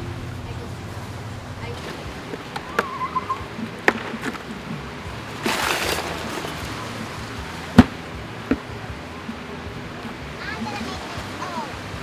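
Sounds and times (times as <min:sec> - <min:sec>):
tent poles knocking and clacking: 0:05.4 - 0:07.0.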